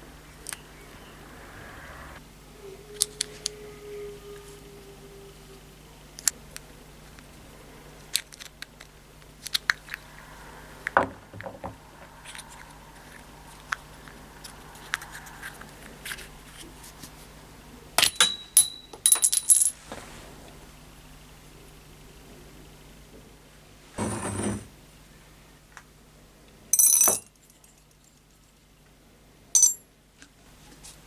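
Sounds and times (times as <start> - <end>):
small metal parts clinking: 18.0 - 19.8, 26.8 - 28.1, 29.6 - 29.8.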